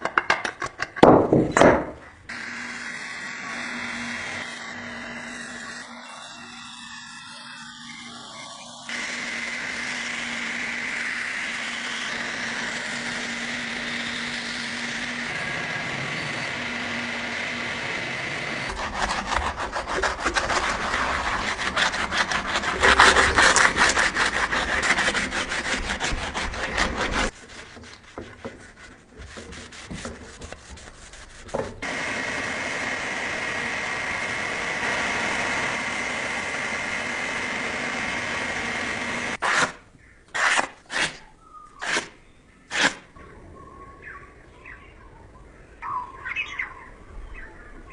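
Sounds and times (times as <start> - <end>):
hand tool scraping: 18.6 - 31.9, 38.6 - 43.1.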